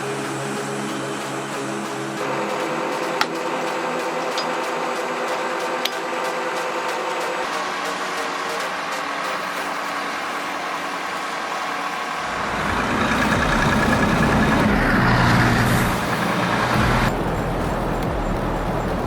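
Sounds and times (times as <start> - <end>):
truck and machinery engines: 0.0 - 19.0
deep loud engine rumble: 12.2 - 19.0.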